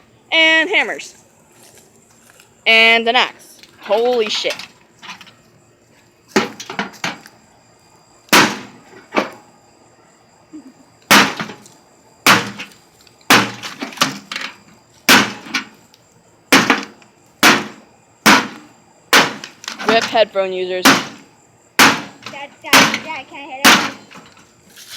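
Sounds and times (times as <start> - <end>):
hammer and axe blows on metal: 21.8 - 24.2.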